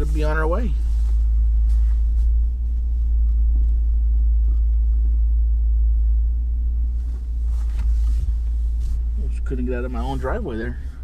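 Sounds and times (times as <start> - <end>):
engine rumble and road noise: 0.0 - 11.0.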